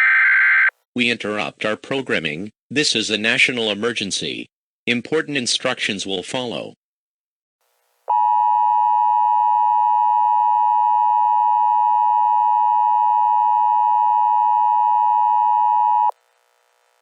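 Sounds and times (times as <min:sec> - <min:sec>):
two-tone alarm: 0:08.1 - 0:16.1.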